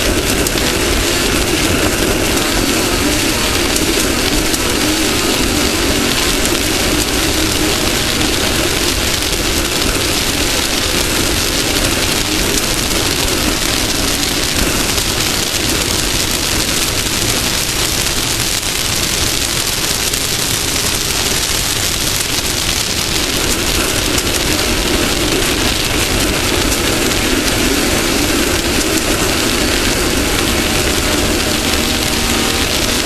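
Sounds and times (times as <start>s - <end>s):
rush of wind and dirt: 0.0s - 33.0s.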